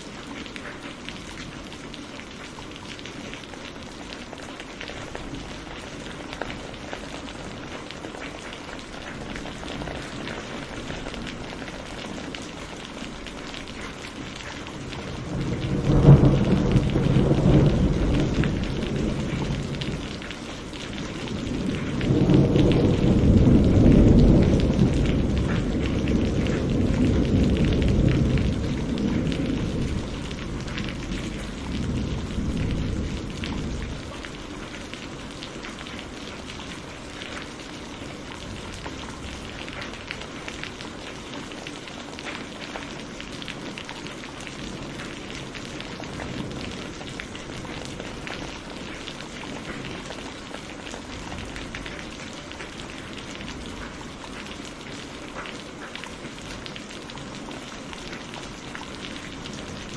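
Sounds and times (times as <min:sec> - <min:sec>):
heavy rain pattering: 0:00.0 - 0:59.9
rolling thunder rumbling: 0:05.1 - 0:40.8, 0:43.5 - 0:54.1.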